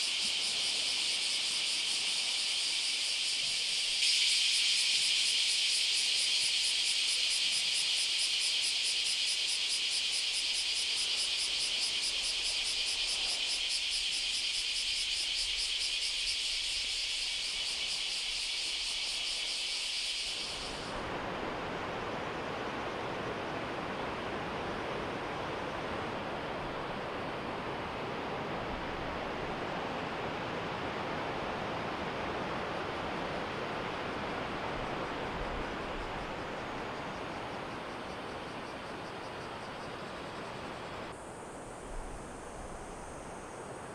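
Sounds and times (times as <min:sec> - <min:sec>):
pulsing insect chorus: 0:00.0 - 0:43.9.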